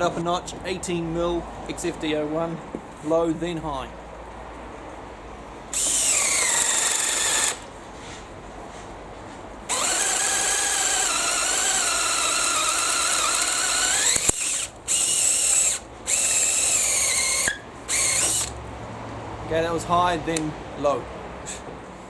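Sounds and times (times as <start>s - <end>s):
cordless drill motor whining: 5.7s - 7.7s, 9.7s - 18.6s
sharp drill click: 5.7s - 7.7s, 9.7s - 18.6s.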